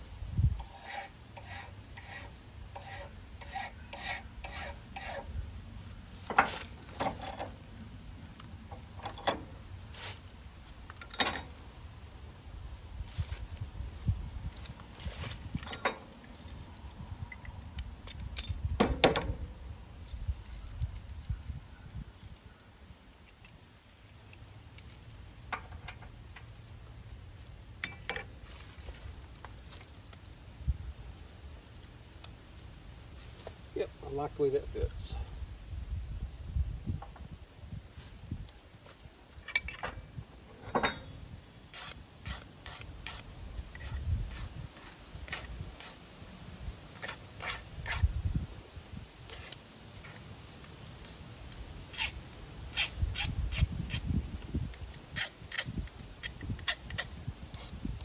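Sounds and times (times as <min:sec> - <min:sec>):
hand file rasping: 0:00.6 - 0:05.3, 0:41.7 - 0:46.0, 0:47.0 - 0:48.1, 0:51.9 - 0:54.1
ringing metallic clinks: 0:11.0 - 0:11.6
small metal parts clicking: 0:20.0 - 0:26.0.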